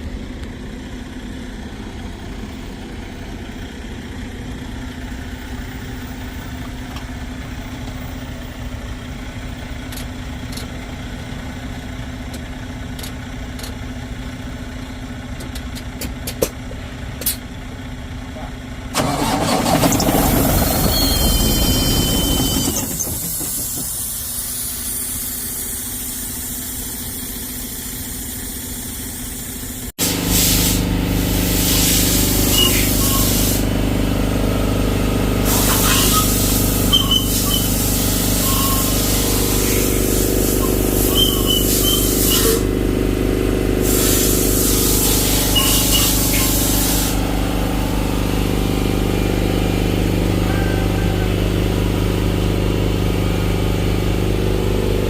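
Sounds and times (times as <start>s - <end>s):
diesel engine droning: 0.0s - 55.0s
loud hissing: 35.4s - 42.8s, 43.6s - 47.3s.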